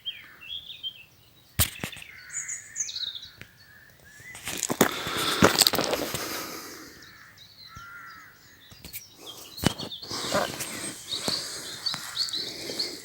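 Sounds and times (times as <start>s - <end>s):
birds calling and chirping: 0.0s - 13.0s
rustling: 4.2s - 6.5s, 9.5s - 13.0s.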